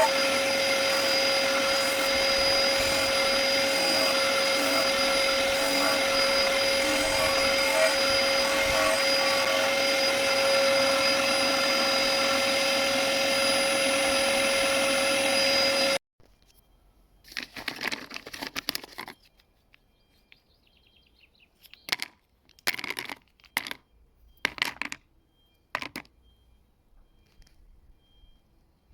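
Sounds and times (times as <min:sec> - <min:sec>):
table saw motor whining: 0:00.0 - 0:16.0.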